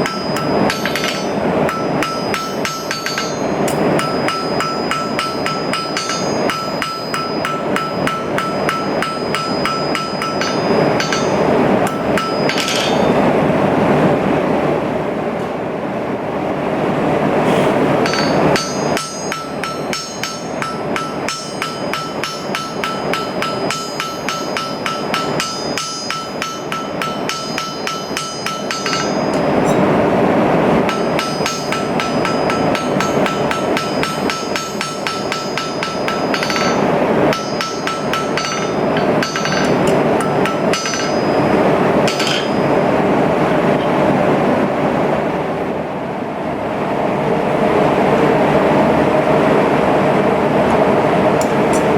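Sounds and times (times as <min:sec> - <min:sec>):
anvil ringing: 0:00.0 - 0:13.2, 0:18.0 - 0:30.1, 0:30.8 - 0:42.9
hammer striking metal on anvil: 0:00.0 - 0:13.2, 0:18.0 - 0:30.1, 0:30.8 - 0:42.9
steady rushing noise: 0:00.0 - 0:51.9.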